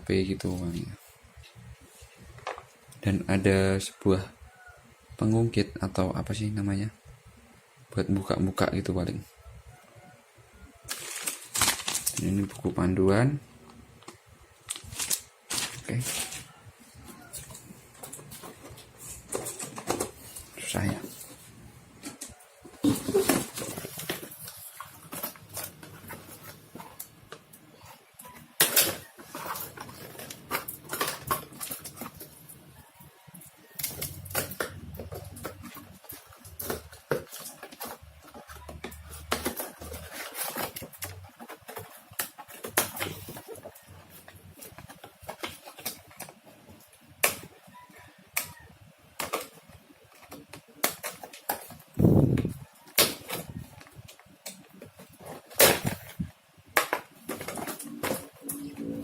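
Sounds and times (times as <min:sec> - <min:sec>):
plastic and cardboard packaging handled: 0:10.0 - 0:13.4, 0:14.0 - 0:59.0.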